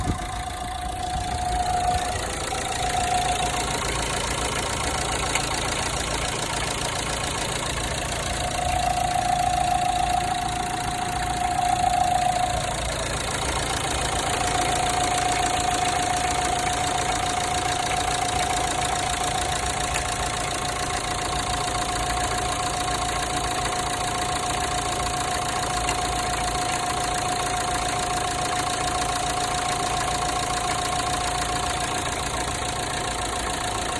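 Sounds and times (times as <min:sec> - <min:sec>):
high whine: 0:00.0 - 0:19.6
diesel engine idling: 0:00.0 - 0:33.9.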